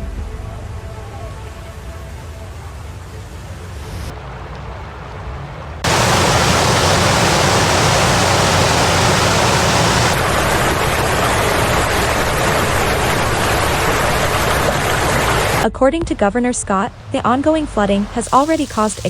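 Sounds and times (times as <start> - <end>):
floodwater rushing: 4.2 - 15.6.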